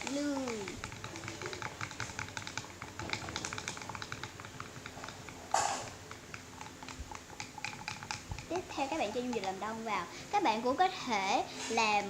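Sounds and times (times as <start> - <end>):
stirrer scraping container: 0.0 - 9.6
stirrer clicking against container: 0.0 - 9.9.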